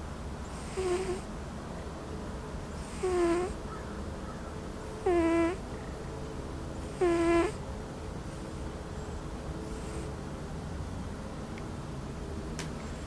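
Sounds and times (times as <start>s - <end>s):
cat whistling snore: 0.5s - 1.2s, 2.8s - 3.6s, 5.0s - 5.6s, 6.9s - 7.6s.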